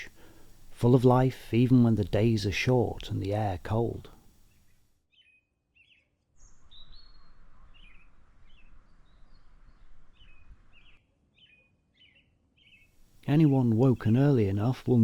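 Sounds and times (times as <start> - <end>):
faint background hiss: 0.0 - 5.0, 12.7 - 15.0
small songbirds chirping: 2.2 - 15.0.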